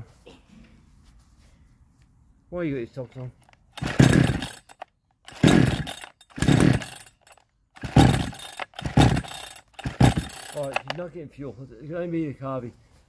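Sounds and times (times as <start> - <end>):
chainsaw recoil starter cranking: 3.0 - 11.1.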